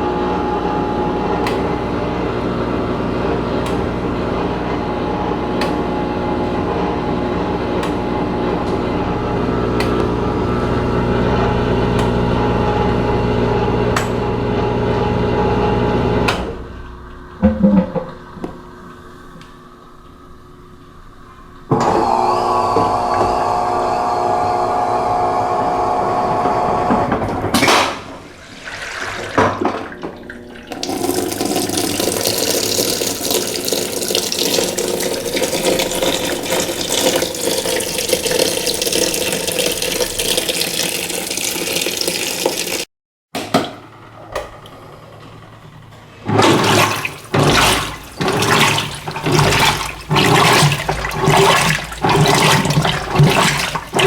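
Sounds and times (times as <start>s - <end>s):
water rushing in washing machine: 0.0s - 18.5s, 21.7s - 42.9s, 46.1s - 54.0s.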